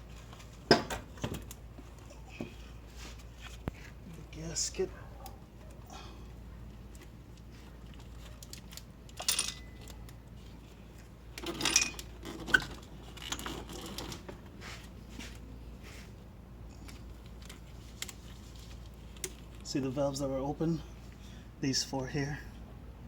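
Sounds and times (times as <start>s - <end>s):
metal clinks and scrapes: 7.8s - 10.2s, 11.4s - 14.3s.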